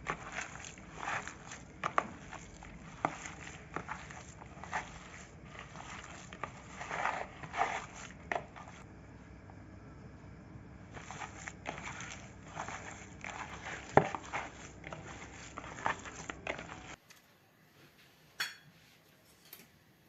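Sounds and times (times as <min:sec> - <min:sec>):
kitchen scrapes and clicks: 0:00.0 - 0:08.8, 0:10.9 - 0:17.0.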